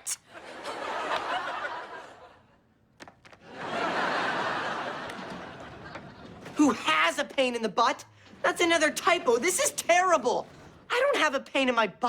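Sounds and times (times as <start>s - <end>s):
audience laughter: 0.3s - 2.6s, 3.4s - 6.6s.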